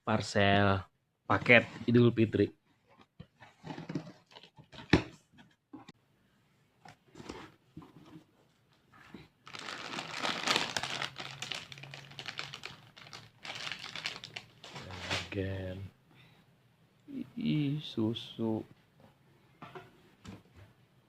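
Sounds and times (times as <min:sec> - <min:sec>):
packaging rustling: 0:09.4 - 0:15.2.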